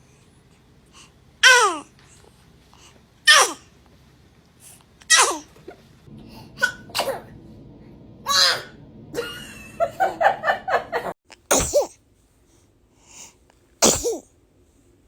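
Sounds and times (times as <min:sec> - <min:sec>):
baby sneezing: 0:01.4 - 0:01.9, 0:03.3 - 0:03.7, 0:05.1 - 0:05.5, 0:06.6 - 0:07.3, 0:11.5 - 0:12.0, 0:13.8 - 0:14.3.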